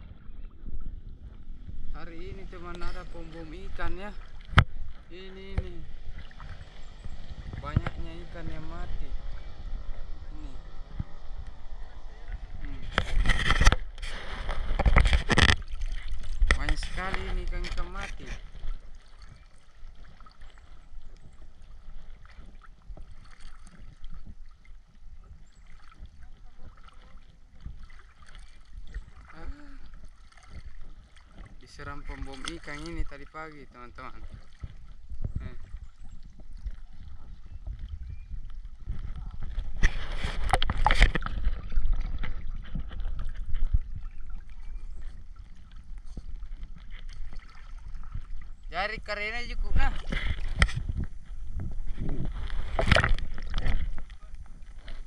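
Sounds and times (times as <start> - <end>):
low rumble: 0.0 - 27.9, 28.8 - 55.0
water sloshing: 0.0 - 55.0.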